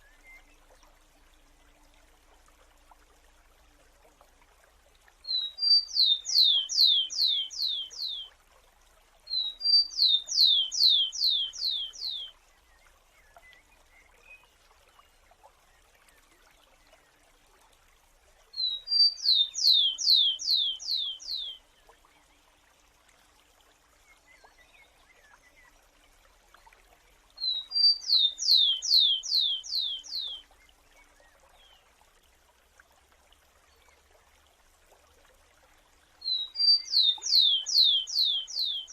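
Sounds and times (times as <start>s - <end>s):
sparrow singing: 36.3s - 38.9s.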